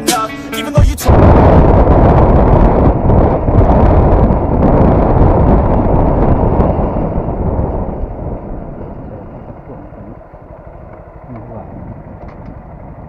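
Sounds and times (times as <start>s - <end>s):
wind buffeting microphone: 0.8s - 13.0s.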